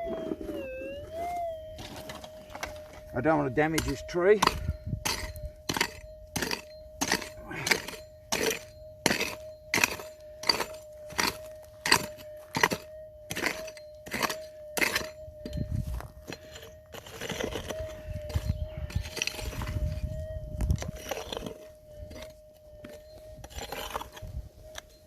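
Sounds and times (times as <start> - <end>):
digging tool striking stony ground: 1.6 - 24.9
scraping of soil and stones: 1.6 - 25.0.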